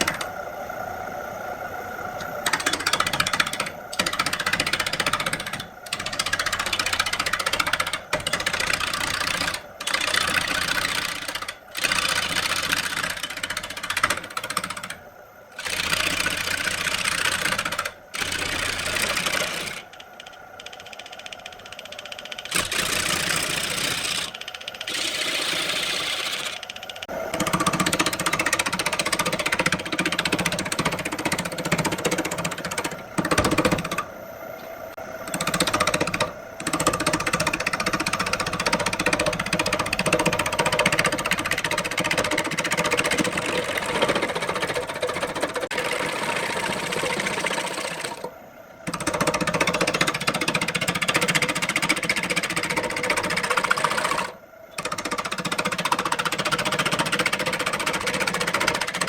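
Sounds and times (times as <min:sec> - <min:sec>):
machine hum: 0:00.0 - 0:59.0
lathe tool cutting wood: 0:35.4 - 0:48.3.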